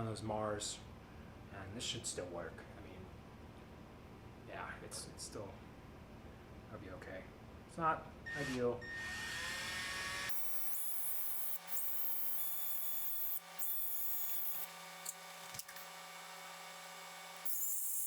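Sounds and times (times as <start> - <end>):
power drill running: 8.3 - 18.0.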